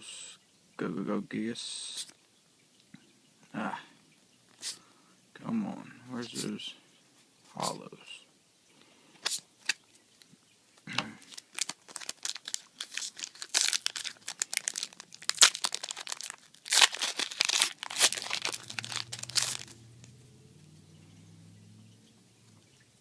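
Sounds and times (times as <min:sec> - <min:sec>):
foil wrapper tearing and crinkling: 0:11.3 - 0:19.8.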